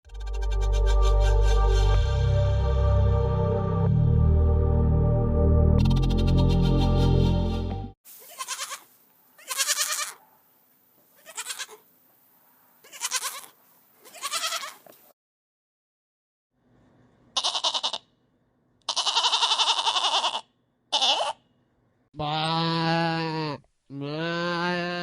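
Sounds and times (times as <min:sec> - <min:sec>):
goats bleating: 0:08.3 - 0:08.8, 0:09.4 - 0:10.2, 0:11.2 - 0:11.8, 0:12.8 - 0:13.5, 0:14.1 - 0:14.8, 0:17.4 - 0:18.0, 0:18.9 - 0:21.4, 0:22.2 - 0:25.0.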